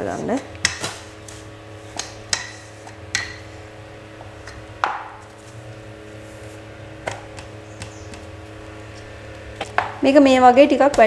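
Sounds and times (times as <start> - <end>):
rolling pin rolling dough: 0.0 - 11.0
steady low hum: 0.0 - 11.0
knocks on a board: 9.7 - 10.0.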